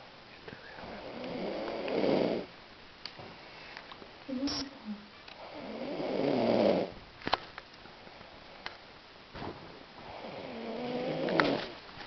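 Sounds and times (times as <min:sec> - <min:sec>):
person snoring: 0:00.8 - 0:02.5, 0:05.4 - 0:06.9, 0:10.1 - 0:11.7.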